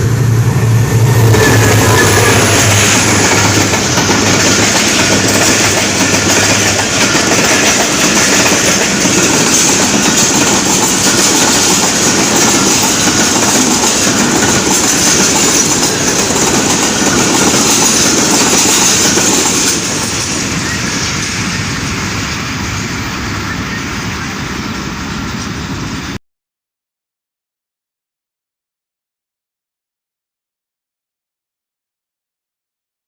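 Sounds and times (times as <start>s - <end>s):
low hum: 0.0s - 4.2s
train wheels on rails: 0.0s - 26.2s.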